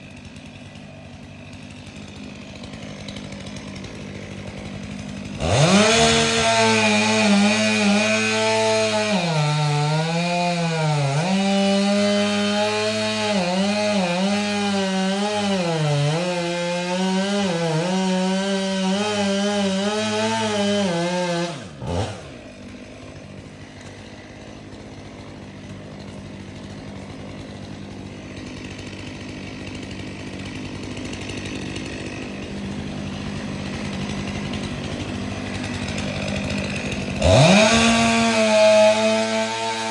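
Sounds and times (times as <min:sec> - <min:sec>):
chainsaw cutting wood: 0:00.0 - 0:39.9
chainsaw idling: 0:00.0 - 0:39.9.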